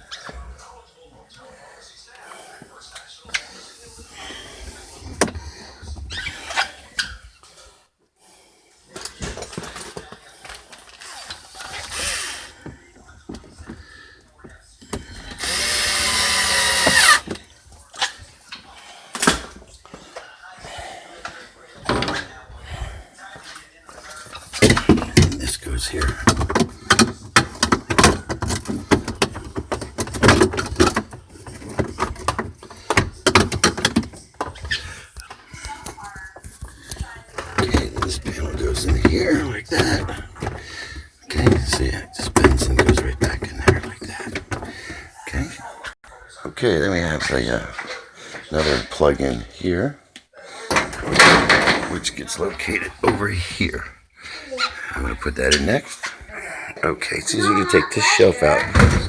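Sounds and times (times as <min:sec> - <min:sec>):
plastic panels clicking and rustling: 0:24.4 - 0:40.6, 0:41.4 - 0:44.7, 0:50.7 - 0:52.1.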